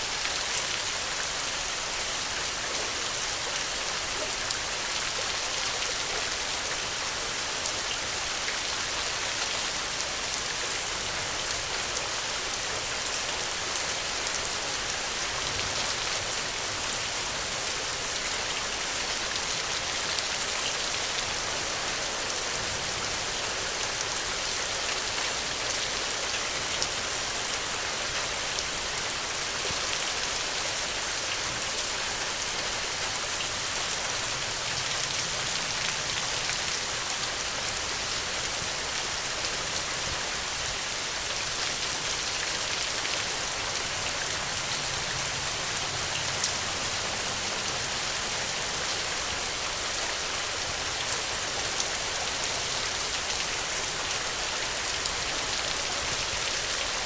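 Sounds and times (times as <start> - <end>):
steady rain hiss: 0.0 - 57.0
raindrops ticking on a surface: 7.4 - 30.4.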